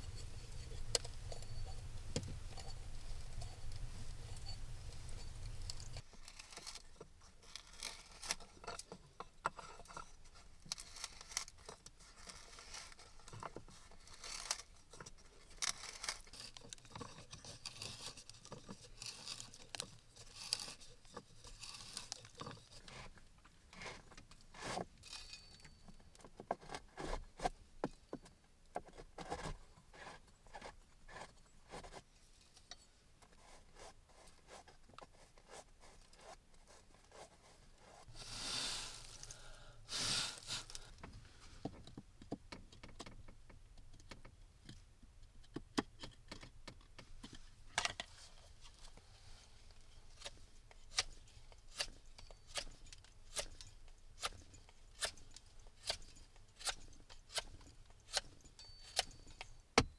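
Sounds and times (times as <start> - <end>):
light scraping and clicking: 0.0 - 44.8.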